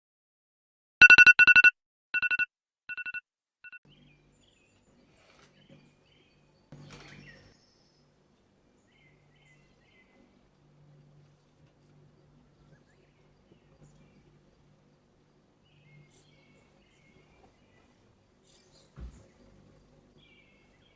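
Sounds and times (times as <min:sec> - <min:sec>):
two-tone electronic alarm beeping: 0:01.0 - 0:03.8.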